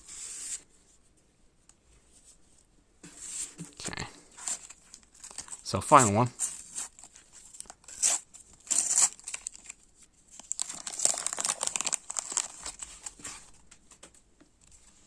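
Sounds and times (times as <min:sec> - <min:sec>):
wrapper crinkling: 0:04.4 - 0:13.5
sticker packet being torn open: 0:07.0 - 0:09.8, 0:10.4 - 0:13.1.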